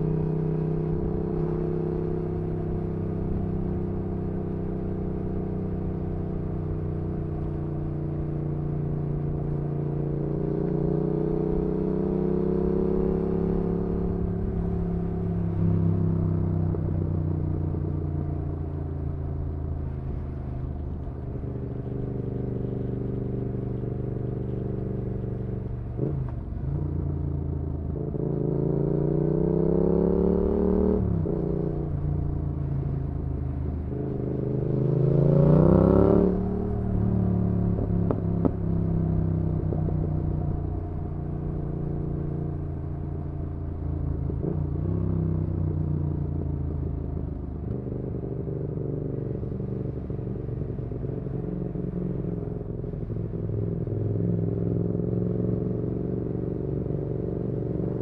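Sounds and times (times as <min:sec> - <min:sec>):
motorcycle engine revving: 0:33.8 - 0:58.0.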